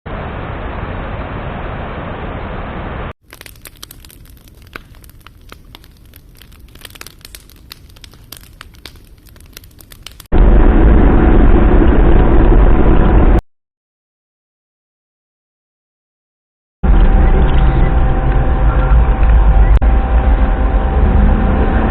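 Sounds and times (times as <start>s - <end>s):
rain pattering on fabric: 3.2s - 10.3s
loud deep rushing noise: 10.4s - 13.4s, 16.8s - 21.9s.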